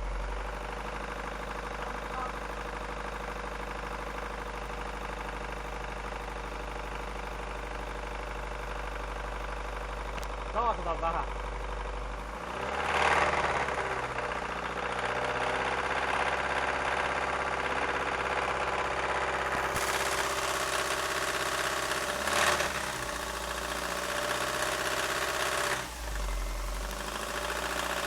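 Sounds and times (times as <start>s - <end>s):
car engine revving: 12.0s - 16.8s, 19.4s - 28.0s.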